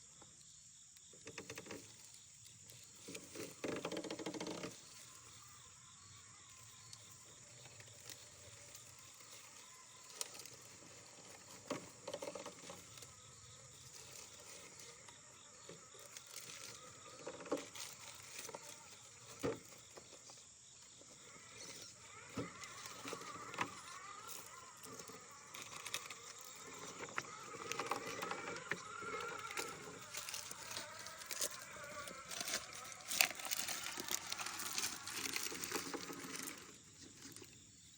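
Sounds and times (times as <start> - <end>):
electric motor and gear whine: 0.0 - 37.9.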